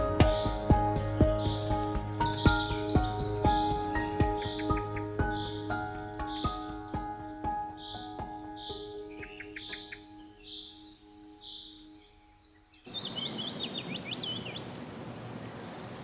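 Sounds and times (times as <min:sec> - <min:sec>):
soft sustained musical notes: 0:00.0 - 0:12.5.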